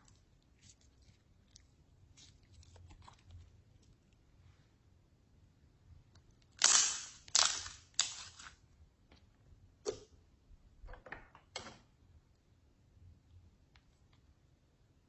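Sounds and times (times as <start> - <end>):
slime crackly bursts: 6.6 - 8.4.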